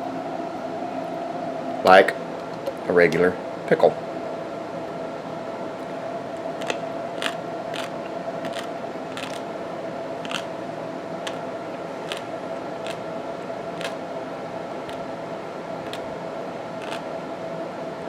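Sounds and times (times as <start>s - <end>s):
steady background hum: 0.0s - 18.0s
person chewing crunchy pickle: 6.6s - 9.4s, 10.2s - 10.5s, 12.1s - 13.0s, 13.8s - 14.0s, 16.8s - 17.0s.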